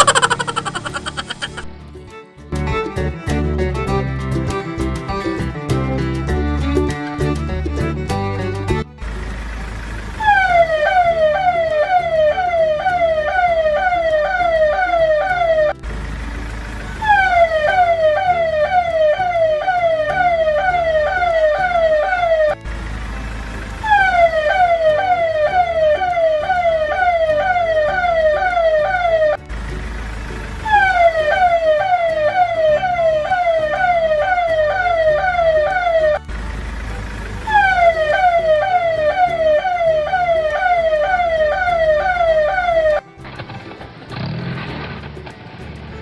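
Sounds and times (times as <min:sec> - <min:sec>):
electronic siren wailing: 0:00.0 - 0:01.6, 0:10.2 - 0:15.8, 0:17.0 - 0:22.6, 0:23.8 - 0:29.4, 0:30.7 - 0:36.3, 0:37.4 - 0:43.0.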